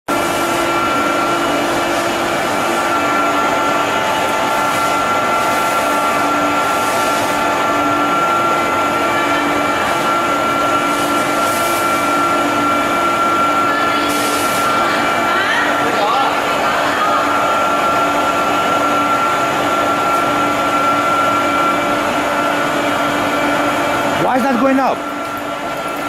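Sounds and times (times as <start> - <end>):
ride motor whine: 0.1 - 26.0.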